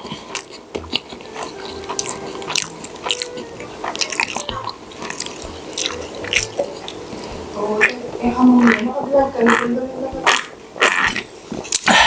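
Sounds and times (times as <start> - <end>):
wet chewing and lip-smacking: 0.0 - 12.0
mouth clicks: 8.6 - 12.0.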